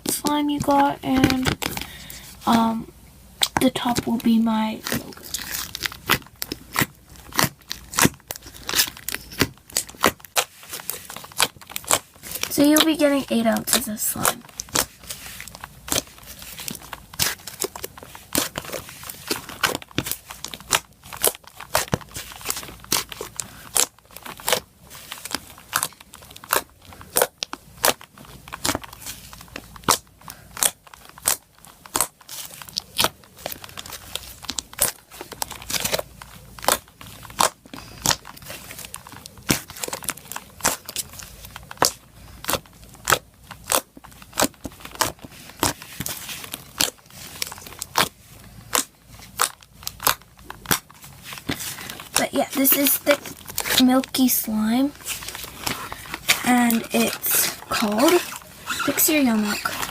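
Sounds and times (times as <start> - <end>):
slime popping and crackling: 0.0 - 59.9.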